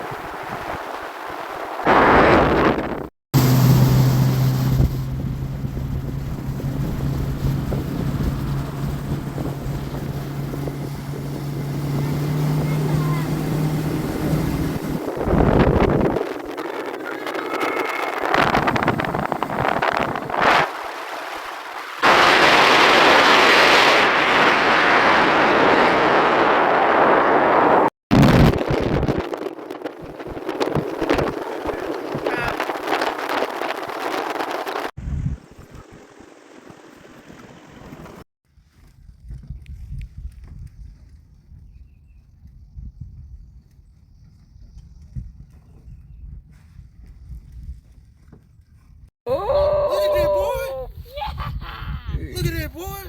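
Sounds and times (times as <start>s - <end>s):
motorboat engine running: 0.0s - 24.1s, 28.2s - 34.9s
wind buffeting microphone: 0.0s - 36.3s, 37.1s - 53.0s.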